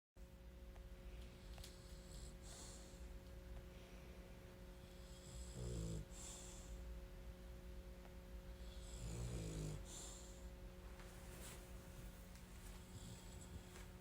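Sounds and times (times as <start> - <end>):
dog snoring: 1.4 - 3.0, 4.7 - 6.8, 8.5 - 10.5, 12.8 - 13.9.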